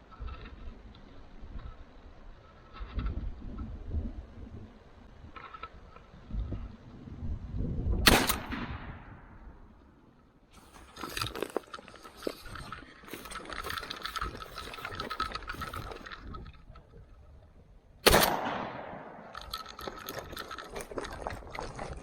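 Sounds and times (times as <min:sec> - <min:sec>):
shotgun blast: 0:08.0 - 0:09.3, 0:18.0 - 0:19.3
dense crackling and rustling: 0:10.5 - 0:17.4, 0:19.2 - 0:22.0.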